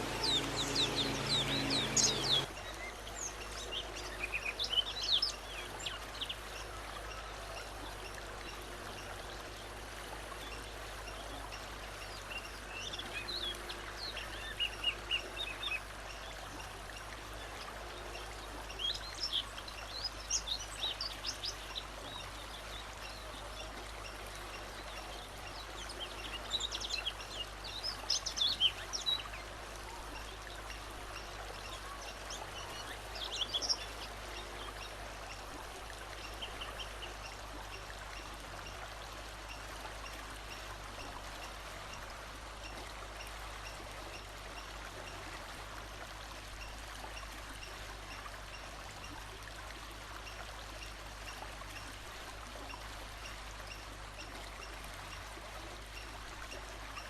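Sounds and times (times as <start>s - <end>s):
songbird chirping: 0.0s - 6.7s.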